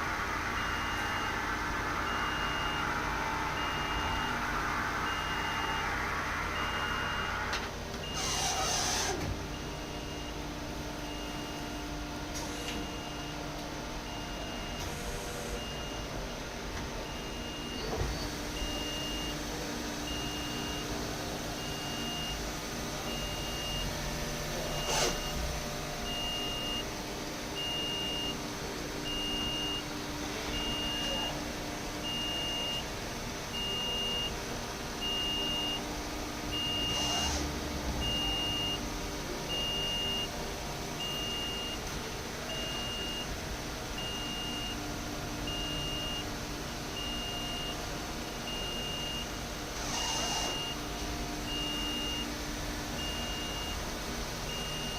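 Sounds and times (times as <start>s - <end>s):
machine hum: 0.0s - 12.4s
high electronic beep: 0.2s - 8.3s.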